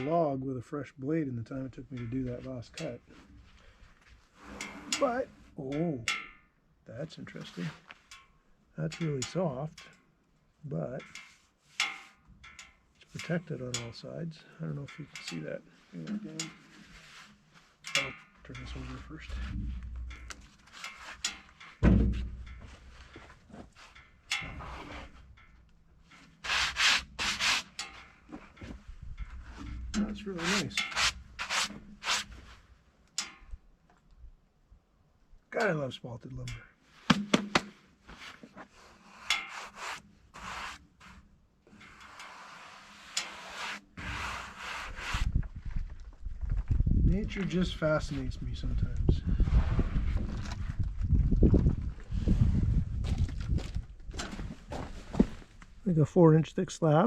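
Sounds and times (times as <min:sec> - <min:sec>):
brushing strokes on wood: 0:15.6 - 0:17.8, 0:26.4 - 0:28.1, 0:30.2 - 0:32.7, 0:38.1 - 0:45.3
wooden slab thumping down: 0:21.8 - 0:22.3
wood knock: 0:37.1 - 0:37.8.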